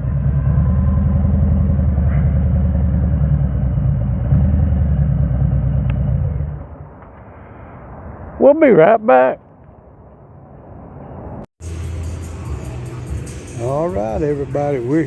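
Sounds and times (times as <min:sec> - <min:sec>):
motorcycle engine idling: 0:11.6 - 0:15.0.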